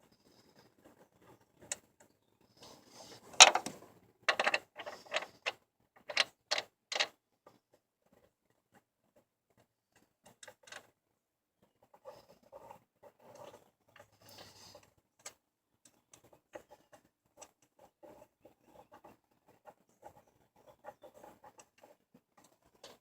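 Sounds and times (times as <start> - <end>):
sharp clicks and knocks: 3.4 - 5.3.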